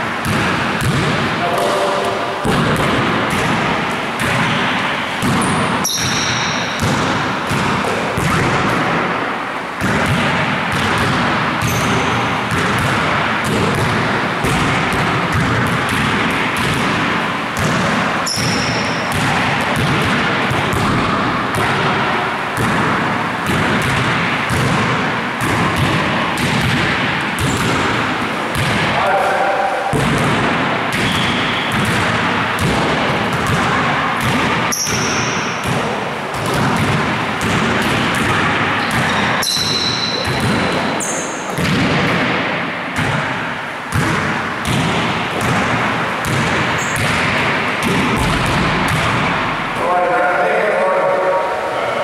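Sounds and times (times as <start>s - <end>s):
basketballs bouncing: 0.0s - 49.8s
short high squeaks: 5.4s - 6.6s, 39.1s - 40.2s.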